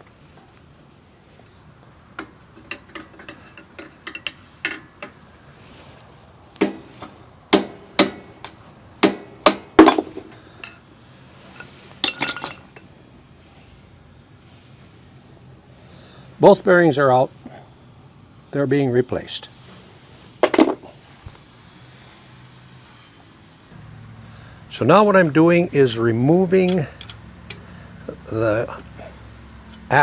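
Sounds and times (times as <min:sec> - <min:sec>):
hammer striking metal: 0:07.5 - 0:10.3.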